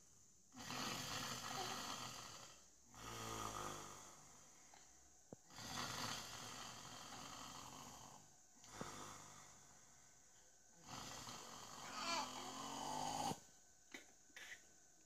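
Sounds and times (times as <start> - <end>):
man snoring: 0.5 - 4.6, 5.4 - 10.1, 10.8 - 13.5.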